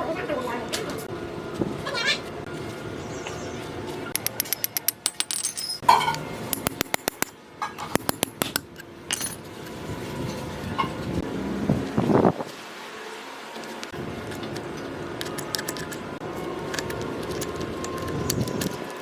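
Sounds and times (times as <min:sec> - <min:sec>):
small metal parts clinking: 0:04.2 - 0:09.5.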